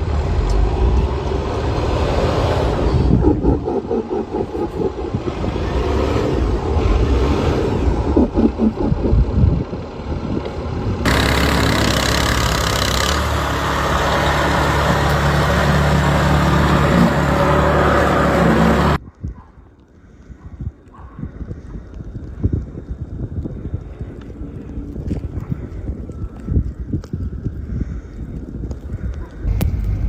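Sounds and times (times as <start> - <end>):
wind buffeting microphone: 0.0 - 11.1, 19.0 - 30.0
vehicle engine humming: 0.0 - 19.0
street noise: 0.0 - 30.0.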